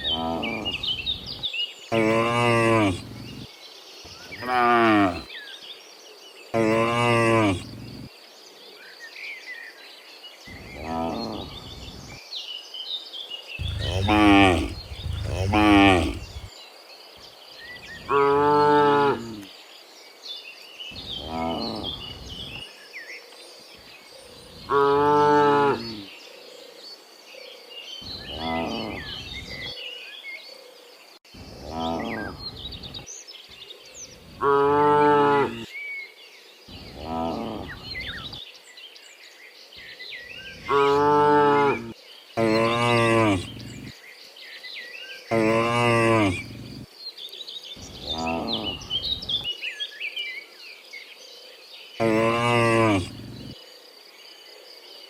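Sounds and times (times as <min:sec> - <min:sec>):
cows mooing: 0:04.5 - 0:05.2, 0:13.6 - 0:16.5, 0:42.5 - 0:43.9, 0:52.2 - 0:53.5
small birds chirping: 0:13.6 - 0:16.5, 0:42.1 - 0:54.4.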